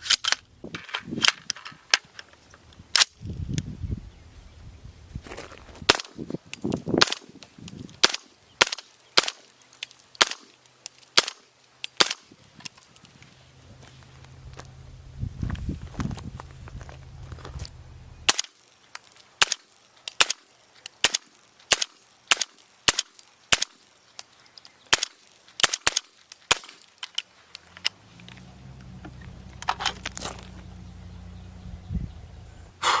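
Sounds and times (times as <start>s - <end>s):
low steady rumble: 12.5s - 18.4s, 27.3s - 32.8s.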